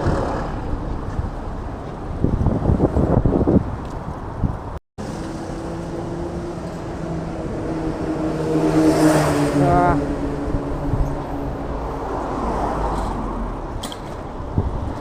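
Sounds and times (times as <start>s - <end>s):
vehicle engine hum: 0.0s - 15.0s.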